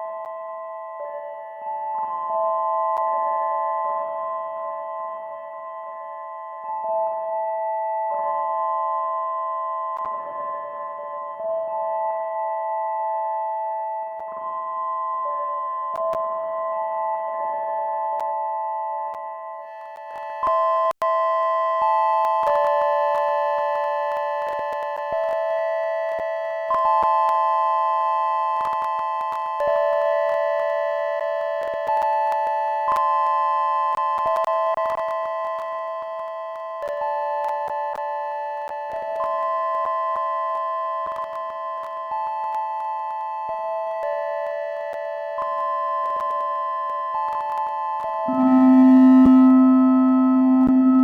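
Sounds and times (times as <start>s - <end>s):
synthesizer sine tone chords: 44.8s - 51.0s.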